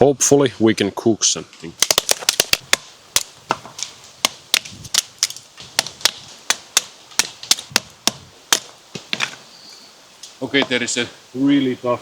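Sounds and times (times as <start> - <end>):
knife chopping wood: 1.8 - 9.3.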